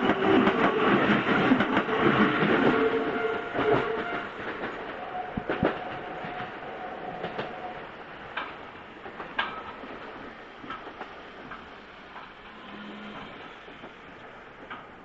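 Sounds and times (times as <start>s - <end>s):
train passing: 0.0s - 15.0s
wheels clacking over rail joints: 0.0s - 15.0s.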